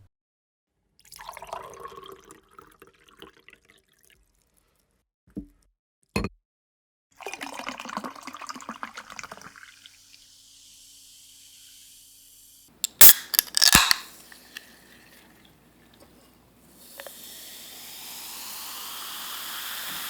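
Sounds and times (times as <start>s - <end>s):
water pouring and gurgling: 7.2s - 10.1s.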